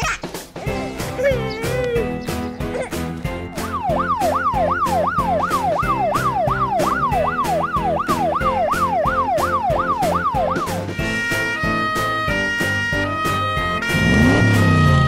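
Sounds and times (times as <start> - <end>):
upbeat music with drum beat: 0.0 - 15.0
siren yelping: 3.6 - 15.0.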